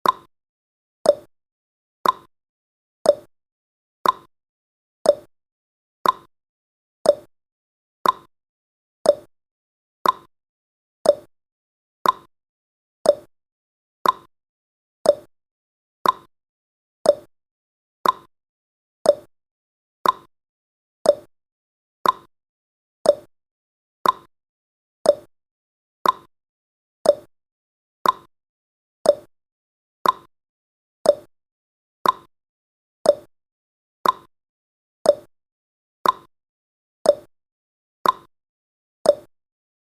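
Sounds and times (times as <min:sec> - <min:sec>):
timer ticking: 0:00.0 - 0:00.3, 0:01.1 - 0:01.3, 0:02.0 - 0:02.3, 0:03.1 - 0:03.3, 0:04.0 - 0:04.3, 0:05.1 - 0:05.3, 0:06.0 - 0:06.3, 0:07.1 - 0:07.3, 0:08.0 - 0:08.3, 0:09.0 - 0:09.3, 0:10.0 - 0:10.3, 0:11.0 - 0:11.3, 0:12.0 - 0:12.3, 0:13.0 - 0:13.3, 0:14.0 - 0:14.3, 0:15.0 - 0:15.3, 0:16.0 - 0:16.3, 0:17.0 - 0:17.3, 0:18.0 - 0:18.3, 0:19.0 - 0:19.3, 0:20.0 - 0:20.3, 0:21.0 - 0:21.3, 0:22.0 - 0:22.3, 0:23.0 - 0:23.3, 0:24.0 - 0:24.3, 0:25.0 - 0:25.3, 0:26.0 - 0:26.3, 0:27.0 - 0:27.3, 0:28.0 - 0:28.3, 0:29.0 - 0:29.3, 0:30.0 - 0:30.3, 0:31.0 - 0:31.3, 0:32.0 - 0:32.3, 0:33.0 - 0:33.3, 0:34.0 - 0:34.3, 0:35.1 - 0:35.3, 0:36.0 - 0:36.3, 0:37.1 - 0:37.3, 0:38.0 - 0:38.3, 0:39.1 - 0:39.3.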